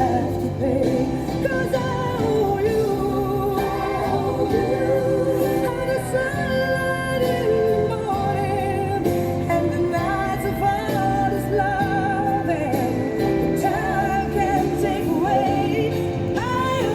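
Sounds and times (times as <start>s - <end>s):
person singing with vibrato: 0.0s - 16.9s
sustained musical backing: 0.0s - 16.9s.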